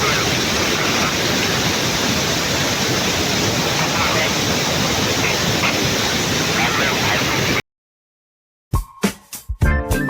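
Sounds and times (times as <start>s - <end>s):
waterfall rushing: 0.0s - 7.6s.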